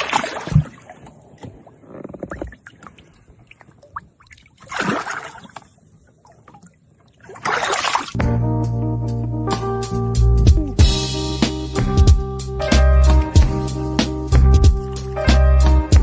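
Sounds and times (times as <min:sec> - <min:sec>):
water lapping: 0:00.0 - 0:08.2
water splashing and sloshing: 0:00.0 - 0:08.2.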